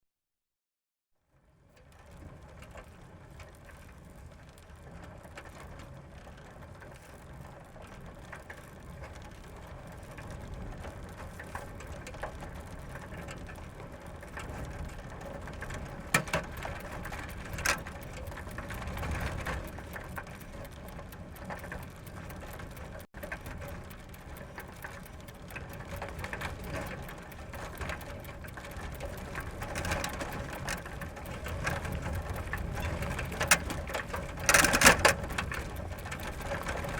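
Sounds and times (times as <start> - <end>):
bike chain and gears rattling: 1.8 - 36.9
sharp clicks: 14.2 - 36.9.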